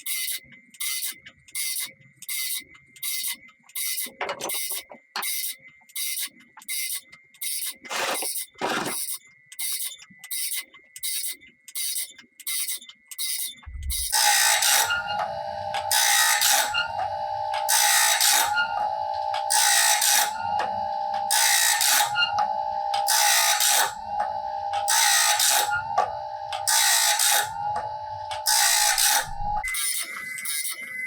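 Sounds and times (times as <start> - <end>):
blade sharpener grinding clatter: 6.9 - 12.8, 13.4 - 30.8
machine low hum: 13.6 - 29.7
machine high whine: 13.6 - 31.0.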